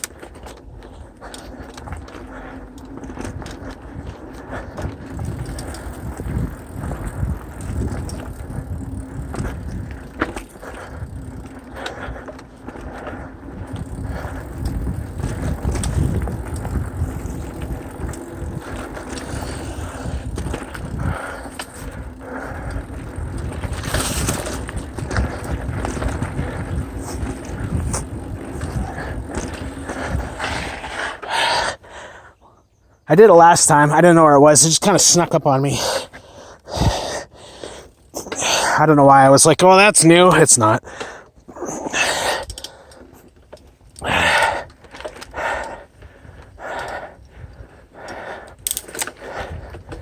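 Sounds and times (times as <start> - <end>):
bike tyres rumbling on dirt: 0.0 - 31.8, 33.2 - 50.0
bike clicking and rattling: 0.0 - 50.0.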